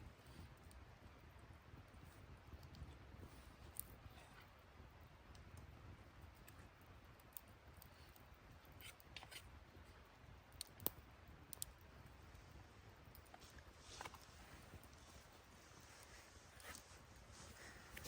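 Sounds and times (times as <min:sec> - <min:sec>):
faint clicks: 0:10.5 - 0:11.8.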